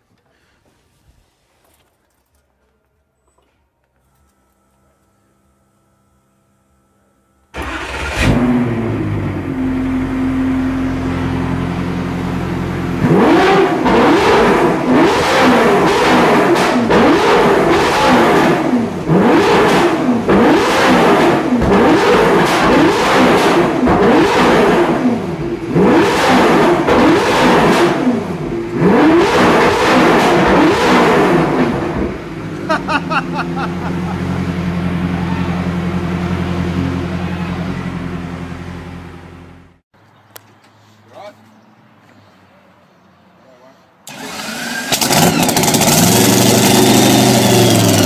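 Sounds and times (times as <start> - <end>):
car engine idling: 4.8 - 39.8
car engine revving: 7.6 - 39.8, 44.1 - 48.0.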